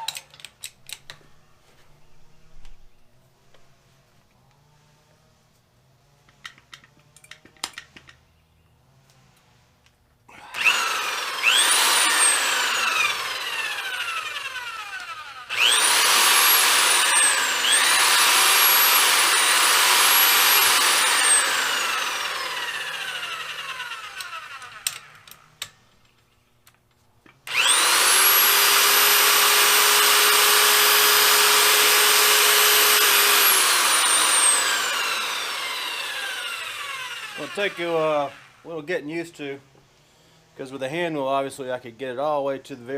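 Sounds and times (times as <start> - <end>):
electric motor whining: 10.3 - 25.5, 27.4 - 38.7.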